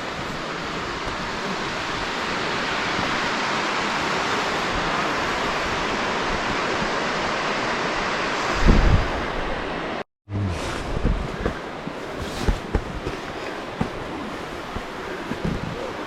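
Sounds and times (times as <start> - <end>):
falling water rushing: 0.0 - 16.0
wind buffeting microphone: 8.4 - 9.6, 10.5 - 16.0.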